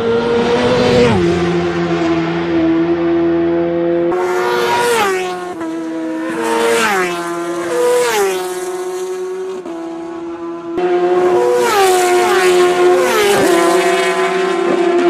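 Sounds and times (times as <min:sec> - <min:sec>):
racing motorcycles passing: 0:00.0 - 0:15.0.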